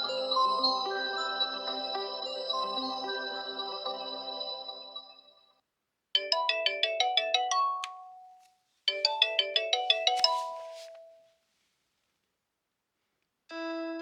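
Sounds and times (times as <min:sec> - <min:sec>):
phone ringtone melody: 0:00.0 - 0:05.3, 0:06.2 - 0:11.3.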